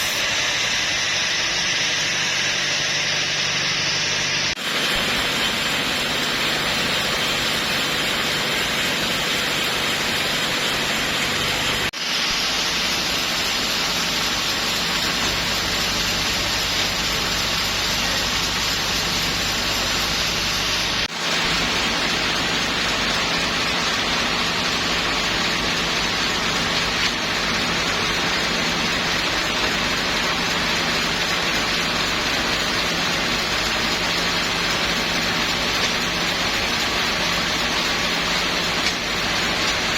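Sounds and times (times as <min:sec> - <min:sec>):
saw cutting wood: 0:00.0 - 0:17.2.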